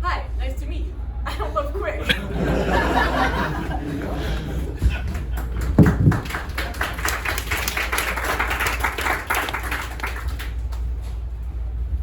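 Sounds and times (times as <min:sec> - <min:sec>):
audience applauding: 0:02.5 - 0:10.9.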